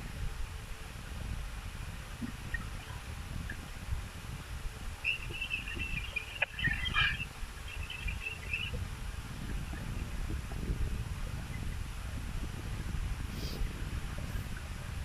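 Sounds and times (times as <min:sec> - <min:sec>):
bird chattering: 0:05.0 - 0:08.8.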